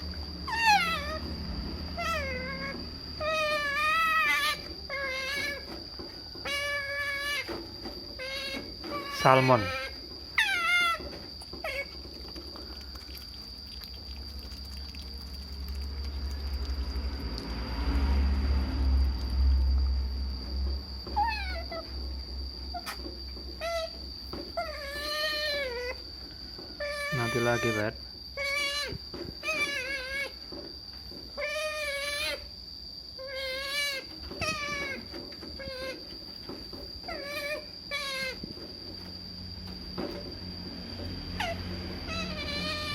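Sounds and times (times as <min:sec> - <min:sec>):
otter squealing: 0:00.0 - 0:17.4, 0:23.6 - 0:26.0, 0:26.7 - 0:30.4, 0:33.2 - 0:36.1, 0:37.0 - 0:38.8, 0:41.3 - 0:42.9.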